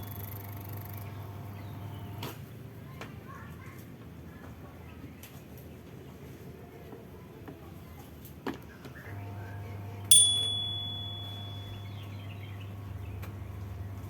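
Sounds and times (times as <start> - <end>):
electric fan motor hum: 0.0 - 2.3, 9.1 - 14.0
sharp metallic ping: 10.1 - 12.0.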